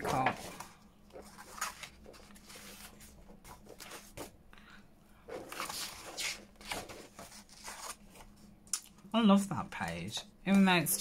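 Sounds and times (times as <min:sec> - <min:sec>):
paper rustling and sliding: 0:00.0 - 0:04.4, 0:05.3 - 0:08.4.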